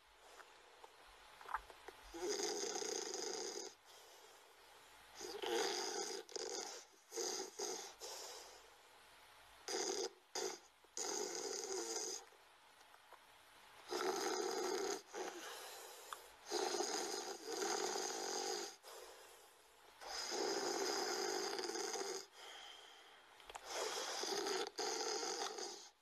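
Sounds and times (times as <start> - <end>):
rasping snoring: 2.1 - 4.0, 5.2 - 8.6, 9.7 - 12.3, 13.9 - 15.8, 16.4 - 19.1, 20.0 - 22.7, 23.6 - 26.0.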